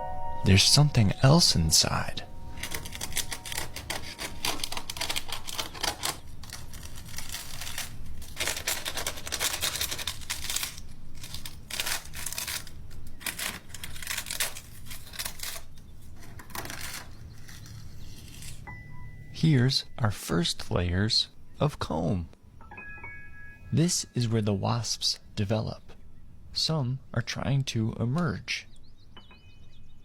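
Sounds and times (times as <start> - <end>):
dry wasp nest tearing and crackling: 2.6 - 18.6.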